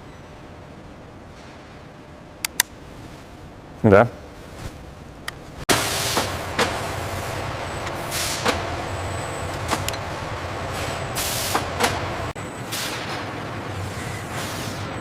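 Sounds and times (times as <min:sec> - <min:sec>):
machinery low hum: 0:00.0 - 0:15.0
sharp clicks: 0:02.4 - 0:02.8.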